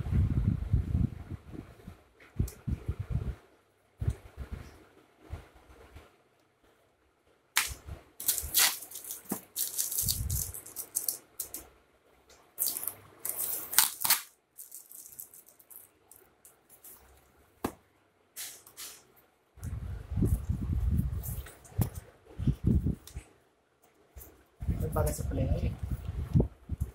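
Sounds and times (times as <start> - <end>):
packaging crinkling and rustling: 7.6 - 11.6, 12.6 - 17.2.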